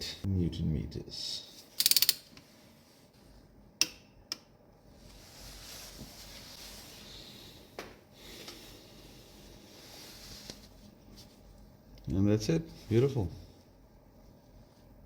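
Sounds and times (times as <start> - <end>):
torque wrench clicking: 1.8 - 2.3.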